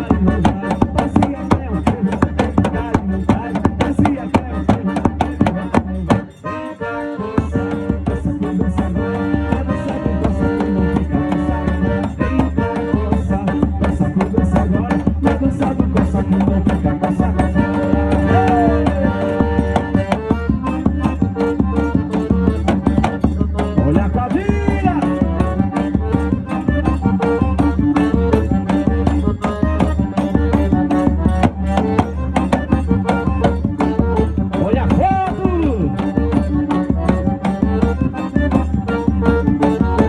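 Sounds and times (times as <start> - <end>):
fast percussion beat: 0.0 - 6.5, 7.4 - 40.0
live band music: 0.0 - 40.0
pulsing deep bass: 0.0 - 40.0.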